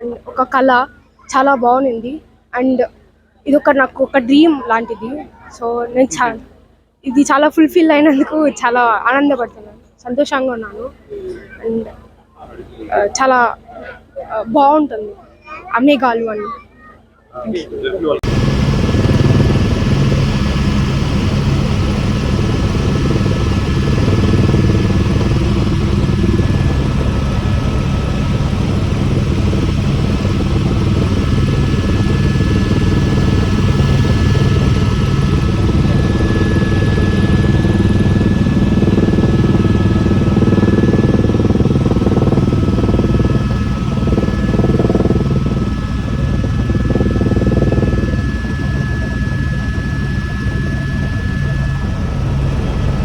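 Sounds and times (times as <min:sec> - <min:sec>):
helicopter engine and rotor drone: 0:18.2 - 0:53.0
thin high whine: 0:18.2 - 0:53.0.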